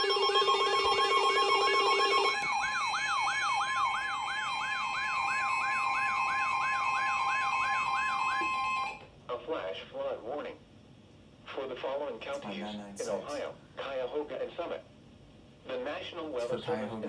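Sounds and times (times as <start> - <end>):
siren sweeping down in pitch: 0.0 - 9.0
two-tone alert signal: 0.0 - 9.0.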